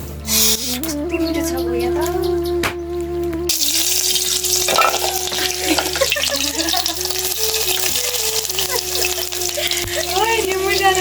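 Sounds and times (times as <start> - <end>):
background music: 0.2 - 11.0
food sizzling in hot oil: 3.5 - 11.0.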